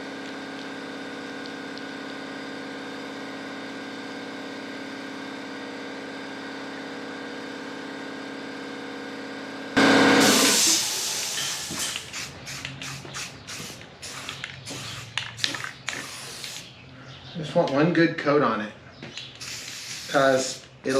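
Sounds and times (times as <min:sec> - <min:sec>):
mechanical hum: 0:00.0 - 0:20.9
aerosol can spraying: 0:11.4 - 0:16.6, 0:19.4 - 0:20.9.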